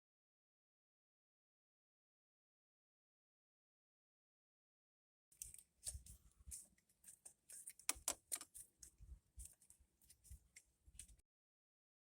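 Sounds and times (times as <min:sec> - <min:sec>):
metal tools clicking and tapping: 0:05.4 - 0:11.2.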